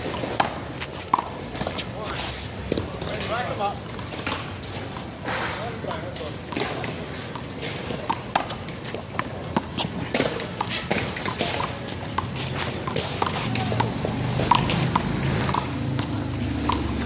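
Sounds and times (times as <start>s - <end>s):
footsteps on court: 6.0s - 17.0s.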